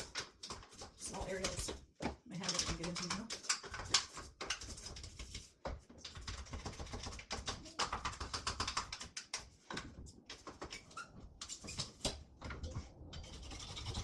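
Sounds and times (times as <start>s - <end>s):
toothbrush scrubbing: 13.2s - 14.0s.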